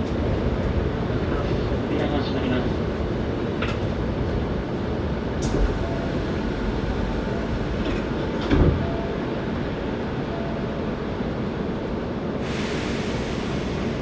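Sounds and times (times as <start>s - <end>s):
train wheels rumbling on rail: 0.0s - 14.0s.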